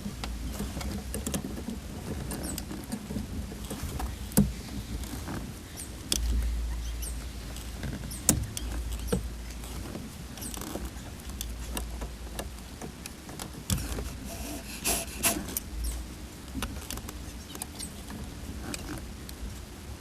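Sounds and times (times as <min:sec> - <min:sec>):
low rumble: 0:00.0 - 0:12.7.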